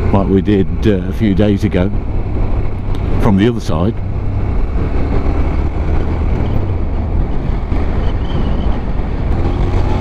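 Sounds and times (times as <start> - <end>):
motorcycle engine rumbling: 0.0 - 10.0
wind rushing over microphone: 0.0 - 10.0.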